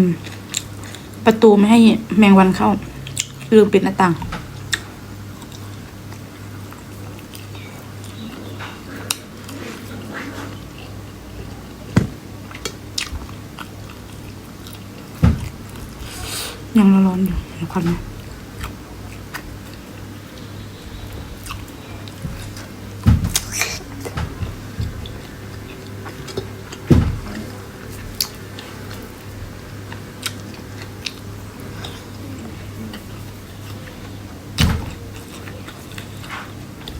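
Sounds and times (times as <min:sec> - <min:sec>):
steady low hum: 0:00.0 - 0:36.9
person chewing: 0:03.0 - 0:03.5, 0:12.4 - 0:16.7, 0:17.4 - 0:34.3, 0:34.9 - 0:36.9.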